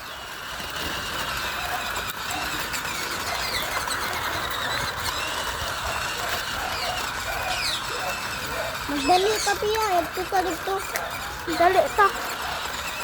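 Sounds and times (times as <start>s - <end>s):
toy car electric motor whirring: 0.0s - 13.0s.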